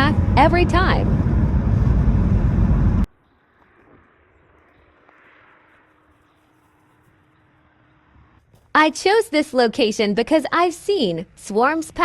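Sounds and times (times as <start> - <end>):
loud rumbling: 0.0 - 3.1
low hum: 0.0 - 8.5.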